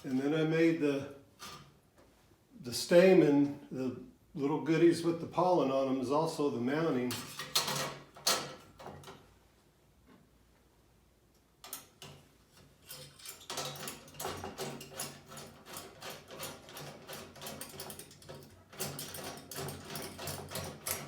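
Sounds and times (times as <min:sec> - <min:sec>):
metal parts clicking and rattling: 0:07.1 - 0:09.2, 0:11.6 - 0:21.0.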